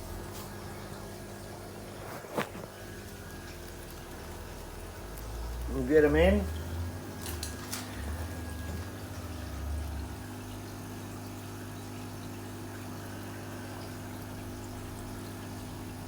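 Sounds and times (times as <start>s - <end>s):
aquarium equipment humming: 0.0s - 16.0s
water sloshing and pouring: 0.0s - 16.0s.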